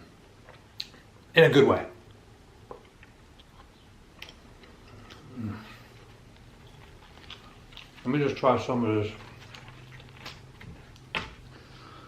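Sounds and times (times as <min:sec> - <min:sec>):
mouth clicks and chewing: 0:00.5 - 0:01.0, 0:06.0 - 0:08.1, 0:09.2 - 0:11.1.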